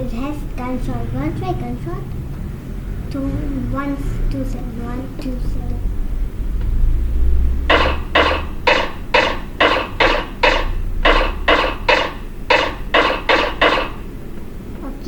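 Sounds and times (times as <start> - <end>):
electronic keyboard gunshot bangs: 7.7 - 14.1.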